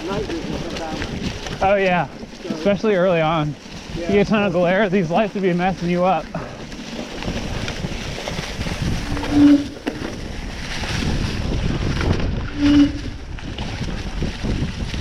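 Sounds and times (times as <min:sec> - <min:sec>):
wind rushing over microphone: 0:06.4 - 0:15.0.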